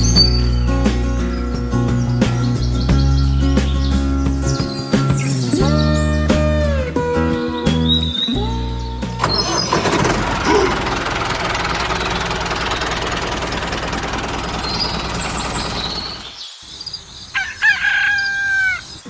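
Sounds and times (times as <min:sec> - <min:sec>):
rooster crowing: 0:17.4 - 0:19.0.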